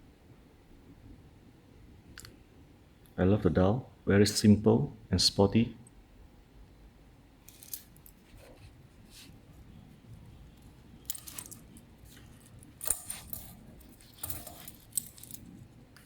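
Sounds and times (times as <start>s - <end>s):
wristwatch clicks and clinks: 7.5s - 8.2s, 10.5s - 15.7s.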